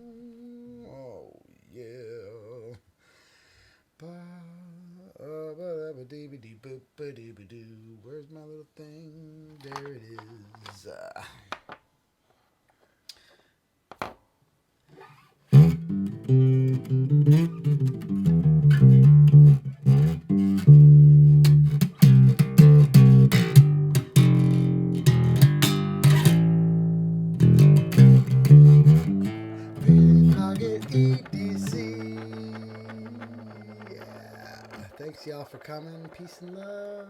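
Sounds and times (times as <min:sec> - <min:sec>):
plucked guitar and bass music: 0:15.5 - 0:34.9
faint clicks: 0:29.7 - 0:37.0.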